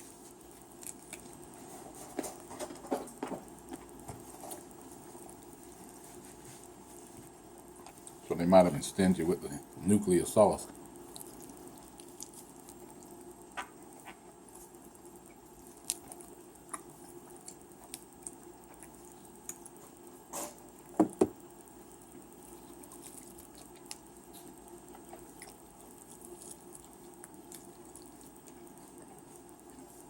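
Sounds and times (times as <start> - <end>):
person chewing with mouth smacks: 11.0 - 20.0, 22.1 - 30.0.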